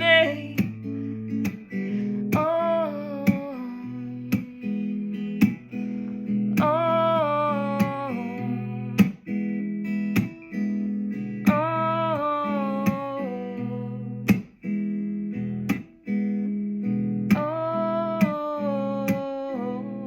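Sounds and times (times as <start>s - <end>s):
acoustic guitar strumming: 0.0s - 20.0s
person singing ooh: 11.5s - 14.2s, 17.3s - 20.0s.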